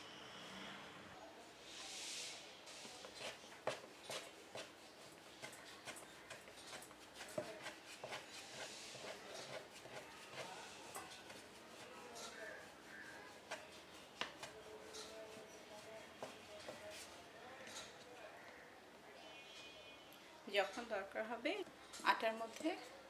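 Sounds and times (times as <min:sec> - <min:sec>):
brief hiss: 0:00.0 - 0:02.9
dough tapping and clicking: 0:05.4 - 0:12.4, 0:13.0 - 0:14.7.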